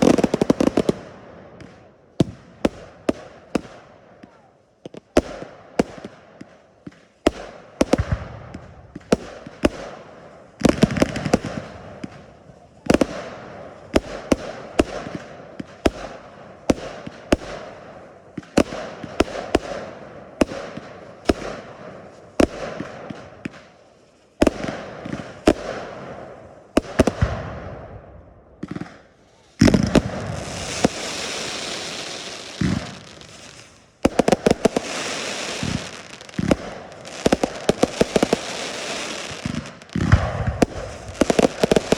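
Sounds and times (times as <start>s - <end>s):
fireworks bangs: 0.0s - 41.9s
fireworks crackling hiss: 0.0s - 41.9s.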